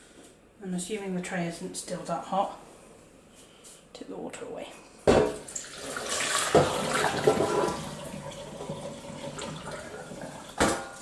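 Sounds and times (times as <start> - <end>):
water pouring and splashing: 5.4 - 10.6.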